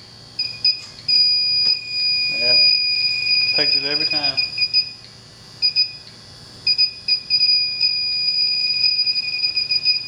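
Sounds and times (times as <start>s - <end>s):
leak detector high-pitched beeping: 0.4s - 5.0s, 5.6s - 10.0s.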